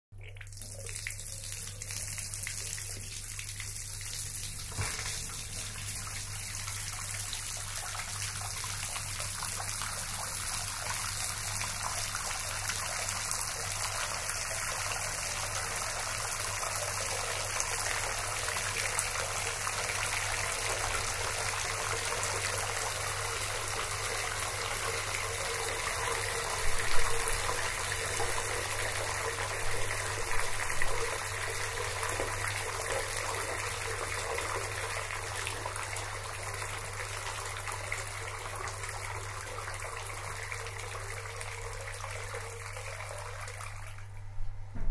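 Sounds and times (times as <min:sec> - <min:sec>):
tap water gushing into sink: 0:00.2 - 0:44.9.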